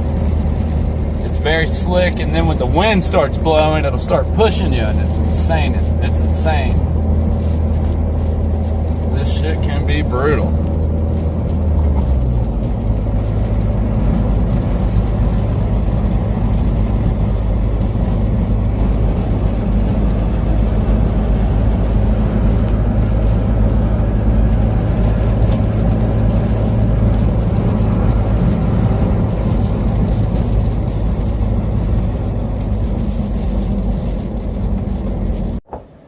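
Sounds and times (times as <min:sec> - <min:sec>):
truck engine and road rumble: 0:00.0 - 0:36.0.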